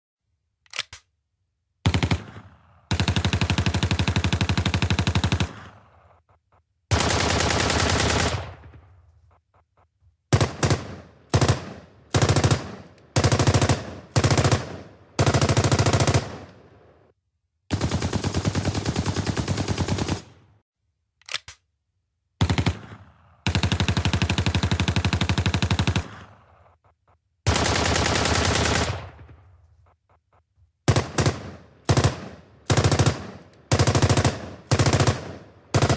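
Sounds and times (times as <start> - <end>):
machine gun firing bursts: 1.9 - 6.2, 6.9 - 9.0, 10.3 - 17.0, 17.7 - 20.6, 22.4 - 26.8, 27.5 - 29.6, 30.9 - 35.9.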